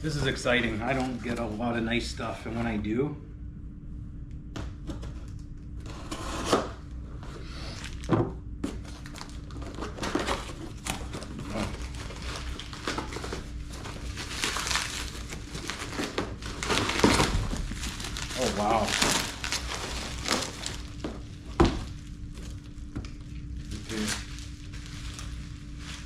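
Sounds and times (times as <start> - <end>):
packaging rustling and crinkling: 0.2 - 1.7, 7.7 - 26.0.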